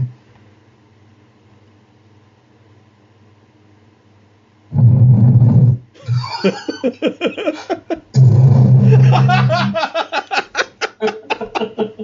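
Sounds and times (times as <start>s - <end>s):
man laughing: 6.0s - 8.1s, 8.8s - 12.0s
distorted bass-heavy sound effect: 8.2s - 9.7s.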